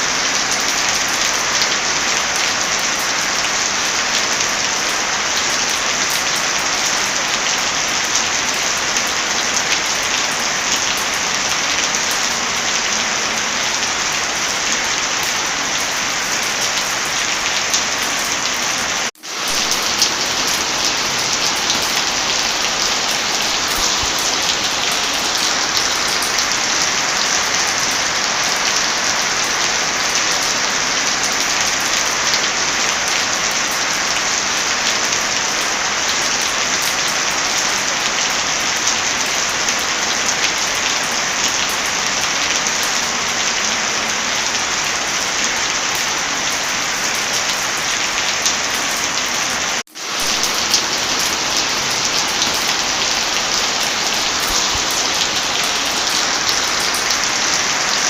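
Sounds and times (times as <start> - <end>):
heavy rain: 0.0 - 58.0.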